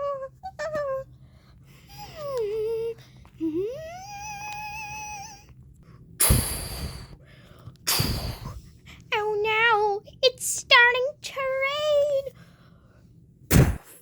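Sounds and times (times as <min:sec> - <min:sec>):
voice humming in wavering tone: 0:01.9 - 0:05.5.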